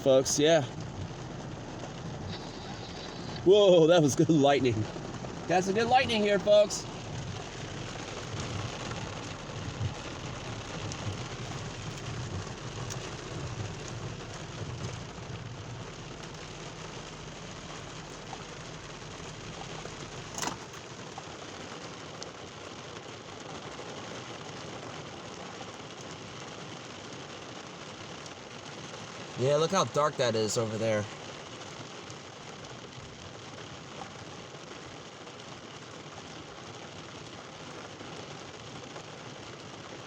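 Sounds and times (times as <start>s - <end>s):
thunder rumbling: 0.0s - 20.7s
steady rain falling: 0.0s - 40.0s.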